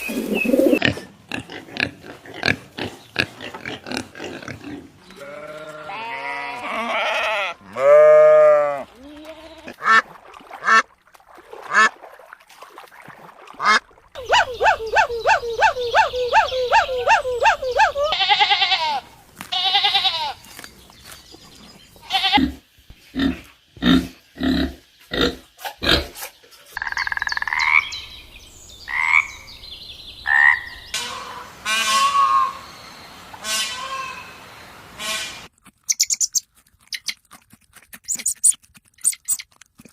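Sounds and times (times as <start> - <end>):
high chirping calls: 0.0 - 0.8, 14.2 - 18.2, 35.9 - 37.1
drawn-out animal calls: 13.7 - 19.0.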